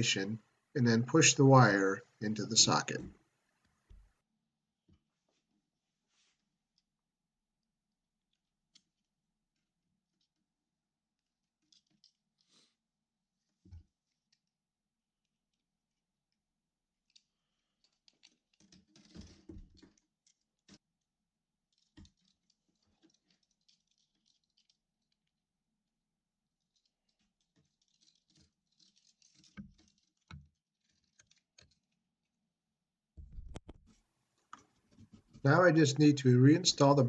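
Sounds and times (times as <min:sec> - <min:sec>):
electrical wire rustling: 0:21.7 - 0:25.3, 0:26.6 - 0:32.0.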